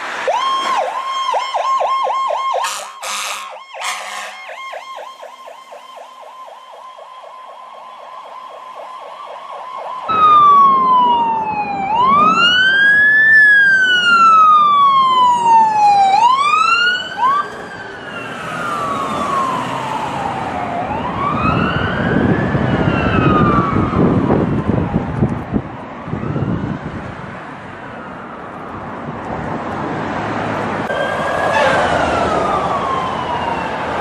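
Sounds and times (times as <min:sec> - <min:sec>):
ambulance siren wailing: 0:00.0 - 0:29.2, 0:30.6 - 0:34.0
fast-pulsing siren tone: 0:00.2 - 0:13.0, 0:30.9 - 0:34.0.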